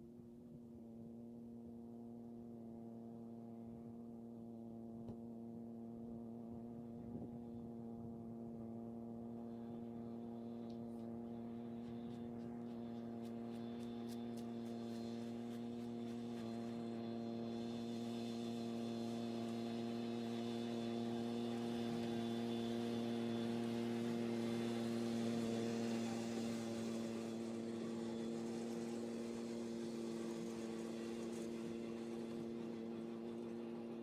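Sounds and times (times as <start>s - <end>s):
steady machine hum: 8.4s - 34.0s.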